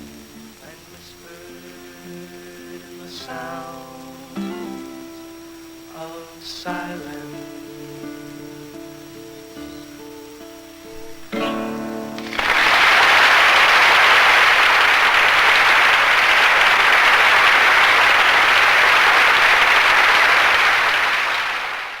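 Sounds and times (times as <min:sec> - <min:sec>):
acoustic guitar chord ringing: 0:00.0 - 0:12.8
audience applauding: 0:12.1 - 0:22.0.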